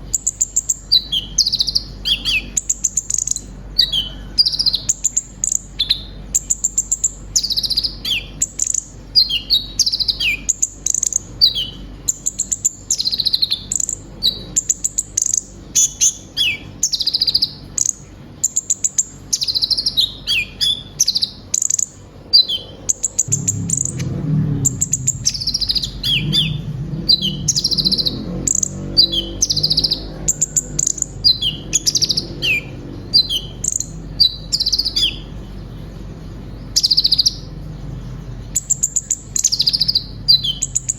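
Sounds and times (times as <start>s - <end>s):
bird singing high chirps: 0.0s - 35.4s, 36.7s - 37.6s, 38.5s - 40.9s
low rumble: 22.3s - 38.7s.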